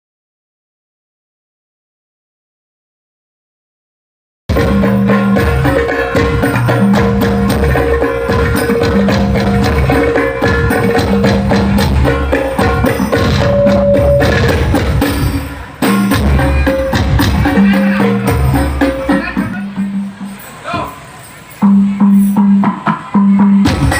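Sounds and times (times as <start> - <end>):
devotional music with busy percussion: 4.5 - 23.9
deep bass note: 10.6 - 15.0.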